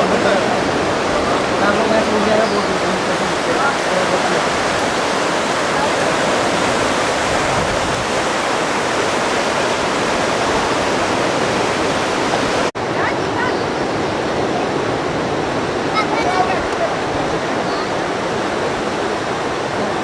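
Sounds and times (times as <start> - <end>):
river rapids roaring: 0.0 - 20.0.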